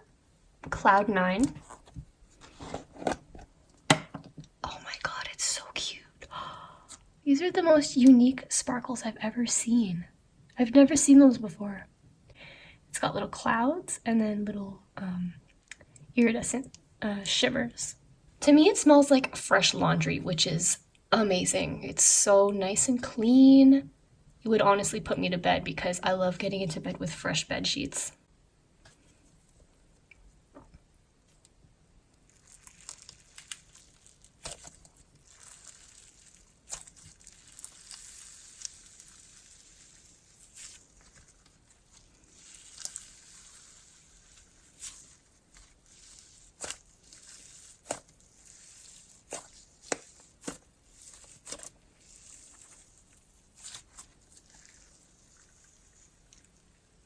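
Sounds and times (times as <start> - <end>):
slime crackling and popping: 32.1 - 57.0.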